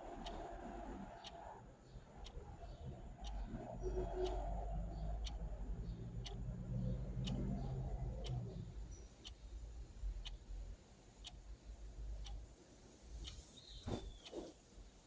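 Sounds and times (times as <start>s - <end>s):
clock ticking: 0.0s - 0.5s, 1.2s - 1.4s, 2.2s - 9.4s, 10.0s - 10.6s, 11.2s - 12.4s.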